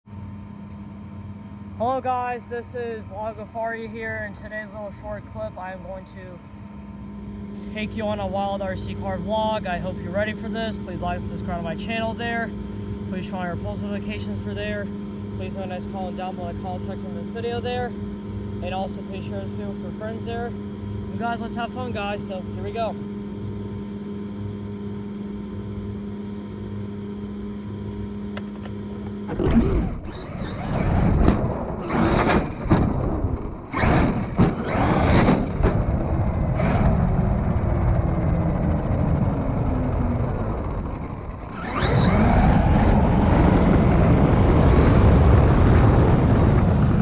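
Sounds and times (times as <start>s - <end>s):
rc car motor whine: 28.2s - 47.0s.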